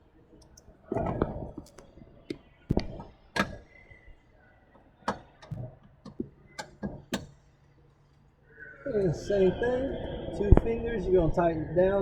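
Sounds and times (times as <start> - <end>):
hose coupler clicks and knocks: 2.3 - 3.6, 5.0 - 7.3.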